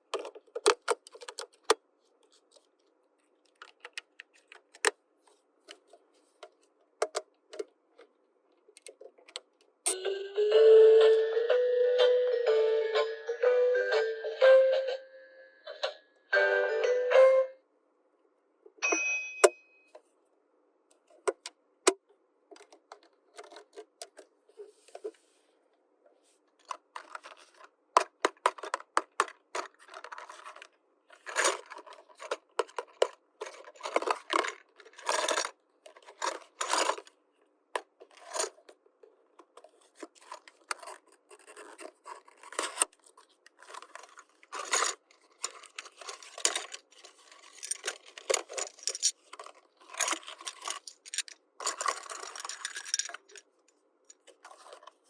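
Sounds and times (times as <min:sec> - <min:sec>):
brief chime: 0:18.8 - 0:20.0
plastic toy pieces clicking: 0:43.5 - 0:53.4.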